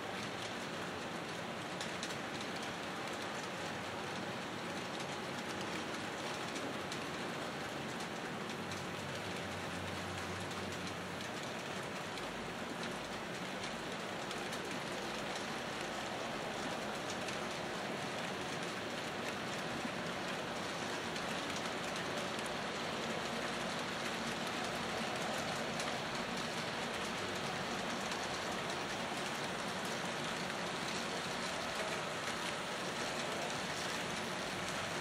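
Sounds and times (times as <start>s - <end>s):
model trains rolling on track: 0.1s - 35.0s.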